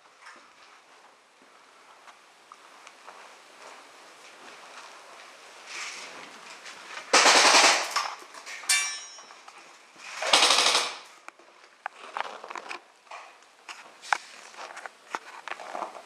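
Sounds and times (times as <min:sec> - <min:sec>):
airsoft gun full-auto bursts: 0:07.1 - 0:08.1, 0:10.2 - 0:11.0
metallic ping: 0:08.7 - 0:09.4.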